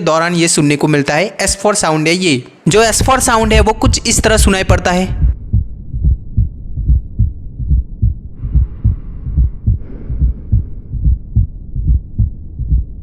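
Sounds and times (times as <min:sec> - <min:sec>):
heartbeat low thuds: 0:02.8 - 0:04.5, 0:05.1 - 0:13.0.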